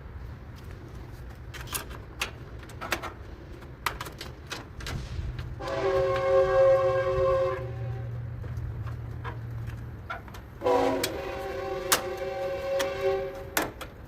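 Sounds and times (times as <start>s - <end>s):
clicks and knocks of parts handled: 0.6s - 5.5s, 8.5s - 11.2s, 13.5s - 14.0s.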